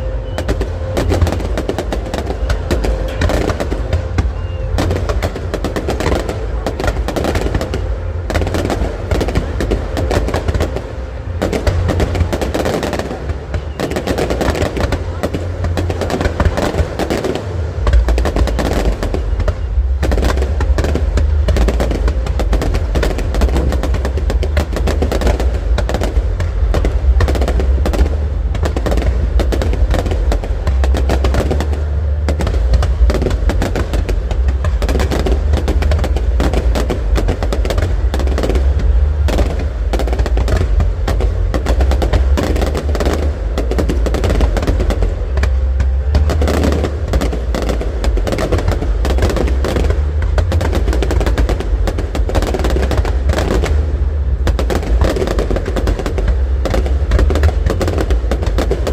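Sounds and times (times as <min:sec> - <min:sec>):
deep rumble: 0:00.0 - 0:58.9
fireworks bangs and crackles: 0:00.0 - 0:58.9.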